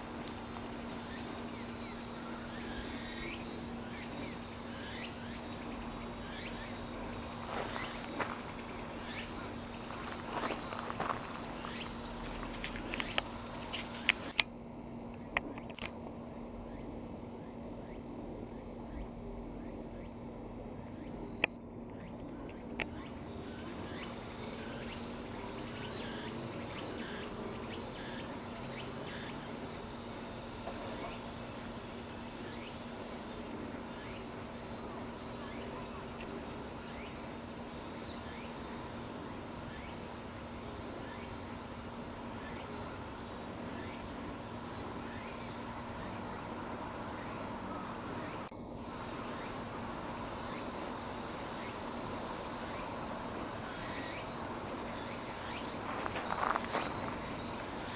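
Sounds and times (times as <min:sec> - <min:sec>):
high-pitched insect buzz: 0:00.0 - 0:38.8, 0:39.6 - 0:57.9
insects trilling: 0:00.0 - 0:57.9.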